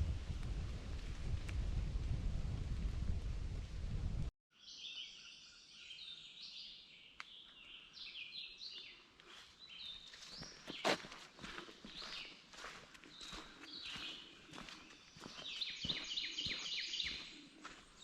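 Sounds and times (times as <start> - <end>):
wind rumbling on microphone: 0.0 - 4.3
songbirds singing: 4.5 - 18.0.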